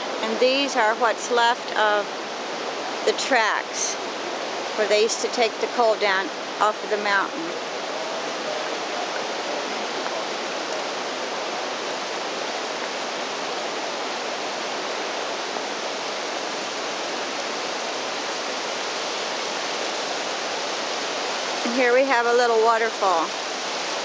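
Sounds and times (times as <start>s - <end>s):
waterfall splashing down rocks: 0.0s - 24.0s.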